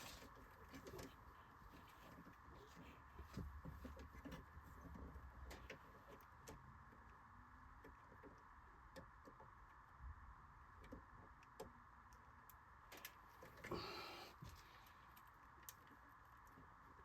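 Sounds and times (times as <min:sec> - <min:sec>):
soft rustle: 0:00.0 - 0:06.2
faint steady hum: 0:00.0 - 0:17.0.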